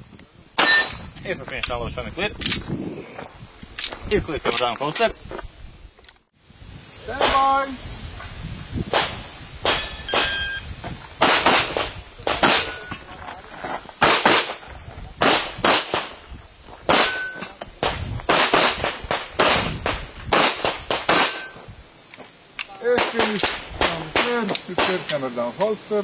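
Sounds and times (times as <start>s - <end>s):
metallic ring of steel targets: 0.6s - 1.0s, 17.0s - 17.6s
shot timer beep: 10.0s - 10.7s
rapid handgun shots: 11.2s - 12.8s, 14.0s - 14.6s, 15.2s - 16.1s, 16.9s - 17.3s, 18.3s - 21.5s.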